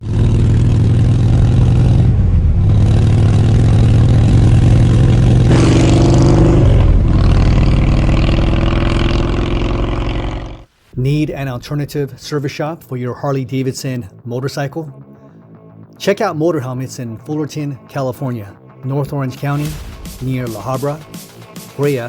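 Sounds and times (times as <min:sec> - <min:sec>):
motorcycle engine running: 0:00.0 - 0:10.7.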